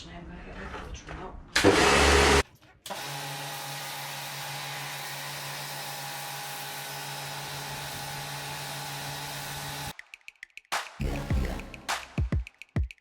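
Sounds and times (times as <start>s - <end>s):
pressure washer motor hum: 1.6s - 2.4s.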